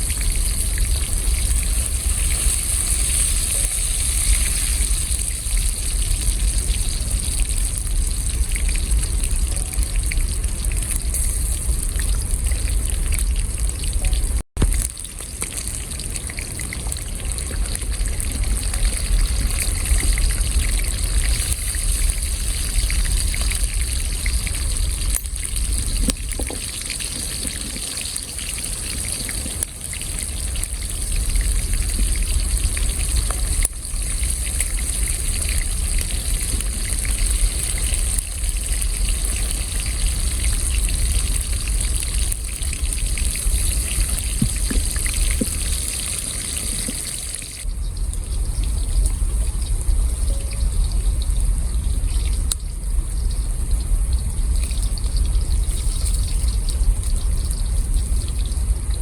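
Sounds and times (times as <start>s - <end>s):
water trickling and gushing: 0.0s - 59.0s.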